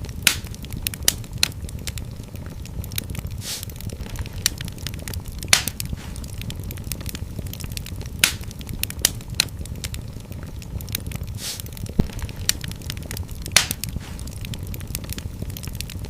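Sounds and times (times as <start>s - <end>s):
low rumble of flames: 0.0s - 16.0s
wood fire crackling and popping: 0.0s - 16.0s.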